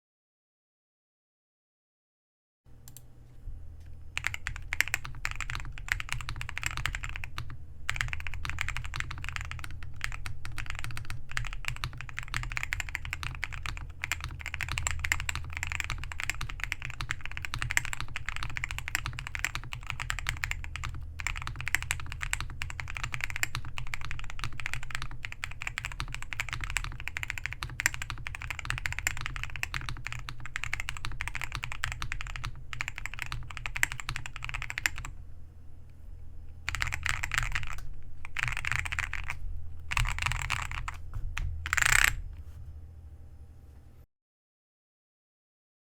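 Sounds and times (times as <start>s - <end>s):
fast mechanical keyboard typing: 4.2s - 35.1s, 36.6s - 41.0s, 41.6s - 42.2s.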